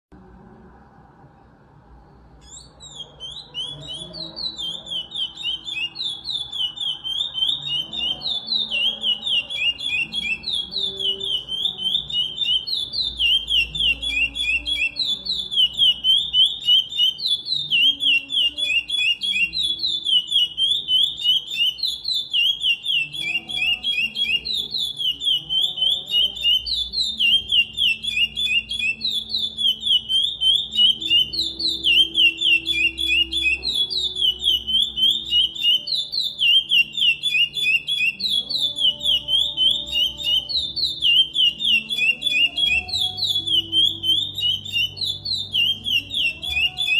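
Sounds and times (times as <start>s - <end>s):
finch singing whistled notes: 2.4s - 46.9s.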